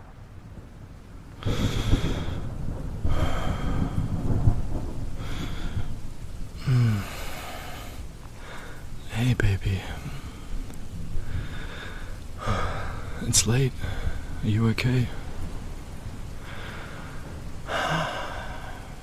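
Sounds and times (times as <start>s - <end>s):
steady rain: 0.0s - 19.0s
thunder rumbling: 0.0s - 19.0s
man humming low: 6.6s - 7.9s.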